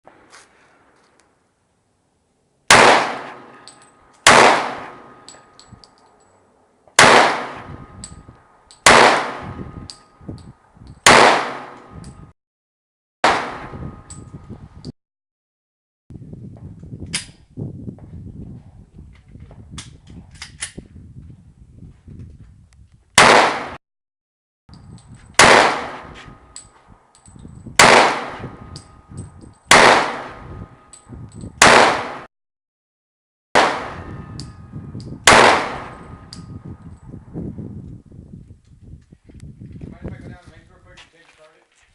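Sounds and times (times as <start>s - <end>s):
pistol shots: 2.7s - 5.4s, 7.0s - 7.7s, 8.8s - 9.6s, 11.0s - 11.8s, 13.2s - 13.8s, 23.2s - 23.8s, 25.4s - 26.2s, 27.8s - 28.5s, 29.7s - 30.4s, 31.6s - 32.3s, 33.6s - 34.1s, 35.2s - 36.2s.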